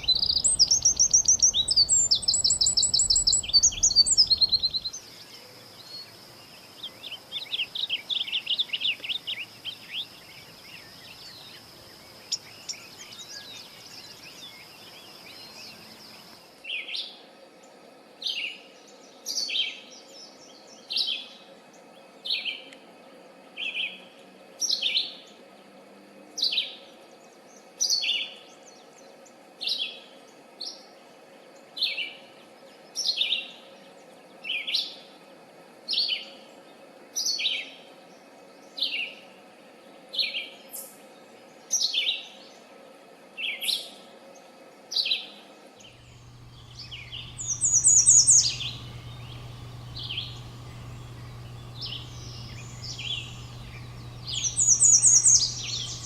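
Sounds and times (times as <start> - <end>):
bird two-part call: 0.0 - 5.0, 46.1 - 56.0
bird chattering trilling song: 0.0 - 5.1, 46.0 - 56.0.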